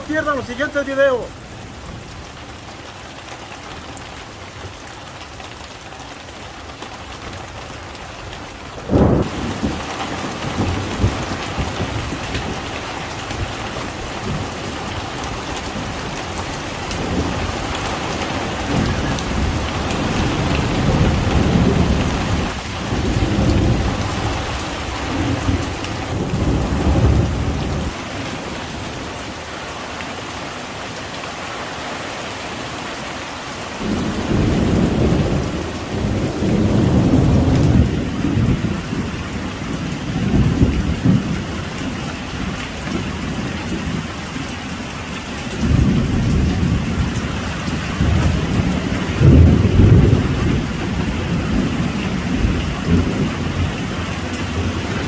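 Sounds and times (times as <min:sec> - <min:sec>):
heavy rain pouring: 0:00.0 - 0:55.0
rolling thunder: 0:08.8 - 0:12.8, 0:16.8 - 0:28.0, 0:33.8 - 0:41.6, 0:45.6 - 0:55.0.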